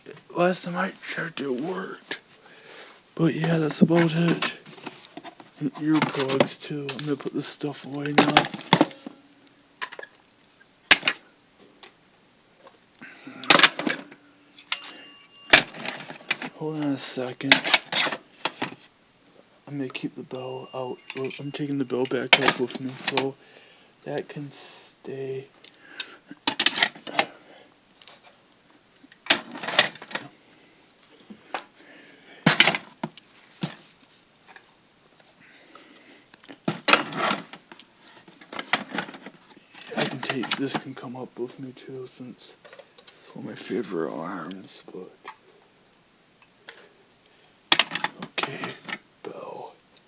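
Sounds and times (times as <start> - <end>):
hard objects clattering and knocking: 8.1 - 9.2, 13.4 - 16.6, 21.1 - 23.3, 32.4 - 33.8, 36.6 - 41.0
faint short tone: 20.3 - 22.0
hard objects knocking and clattering: 36.6 - 37.6.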